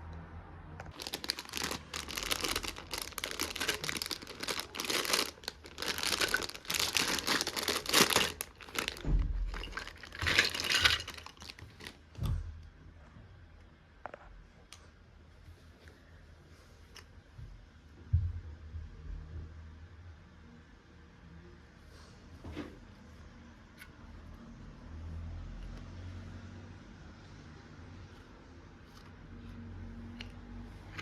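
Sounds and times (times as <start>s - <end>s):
rustling and crinkling: 0.8s - 12.4s.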